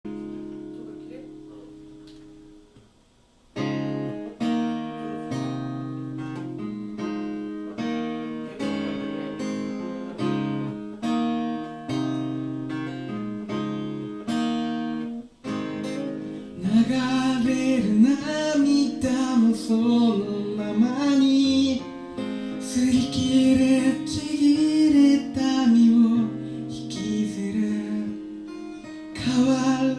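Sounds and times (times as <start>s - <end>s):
acoustic guitar strumming chords: 3.5s - 29.9s
person singing: 16.6s - 28.3s, 29.1s - 29.9s.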